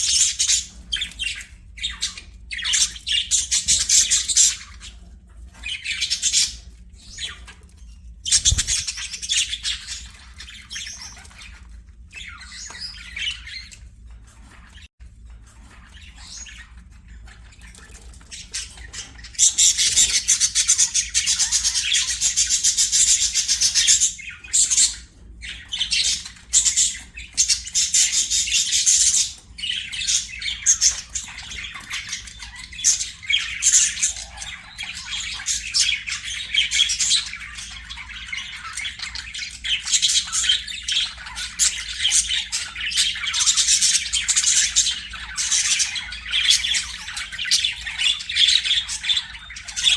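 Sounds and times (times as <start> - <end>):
budgerigars chattering: 8.3 - 13.8, 17.4 - 49.9.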